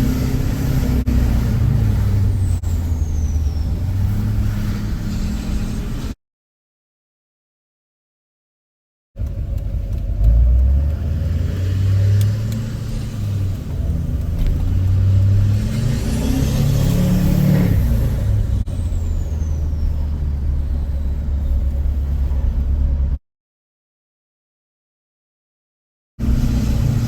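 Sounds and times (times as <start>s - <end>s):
diesel engine droning: 0.0s - 6.2s, 9.2s - 23.2s, 26.2s - 27.0s.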